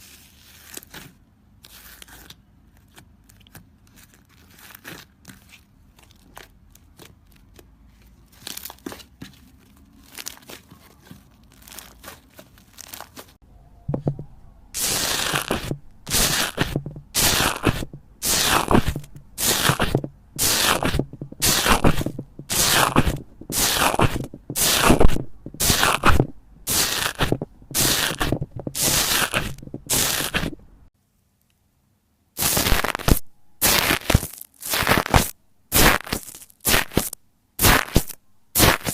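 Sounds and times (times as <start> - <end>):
slime crunching: 14.8 - 30.7
slime crackling: 14.8 - 30.8, 32.4 - 38.9.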